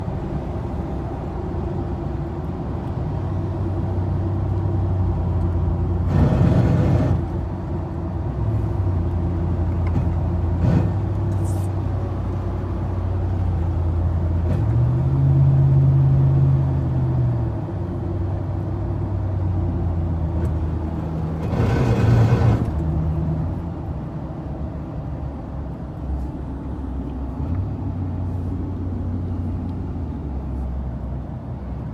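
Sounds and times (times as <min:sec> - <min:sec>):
pickup truck driving drone: 0:20.4 - 0:23.0
harsh grinding surges: 0:20.8 - 0:22.8.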